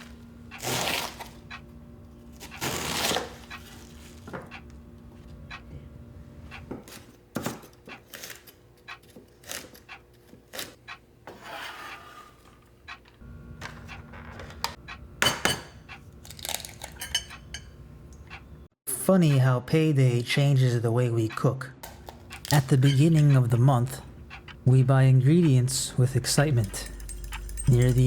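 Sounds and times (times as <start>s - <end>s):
dishes and utensils clinking: 13.6s - 18.5s, 21.8s - 24.6s, 25.4s - 28.0s.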